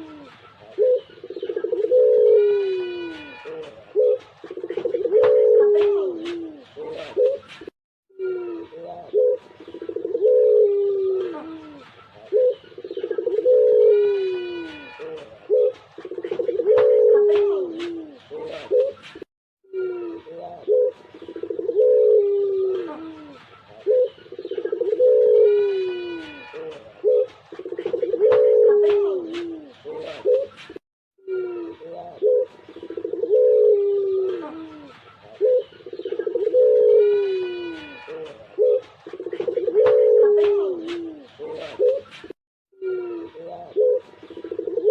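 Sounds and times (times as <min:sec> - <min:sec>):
dove cooing: 0:00.0 - 0:19.1, 0:19.7 - 0:30.6, 0:31.3 - 0:42.2, 0:42.8 - 0:44.9.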